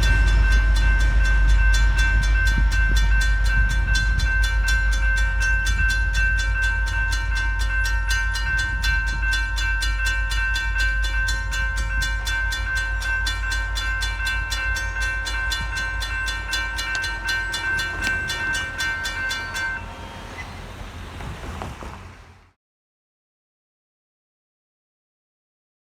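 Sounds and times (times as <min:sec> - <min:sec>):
train rumbling past: 0:00.0 - 0:22.6
bell ringing rapidly: 0:13.4 - 0:19.9.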